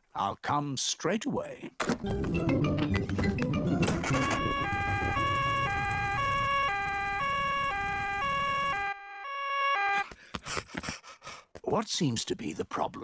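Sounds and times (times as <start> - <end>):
two-tone siren: 3.6 - 10.1.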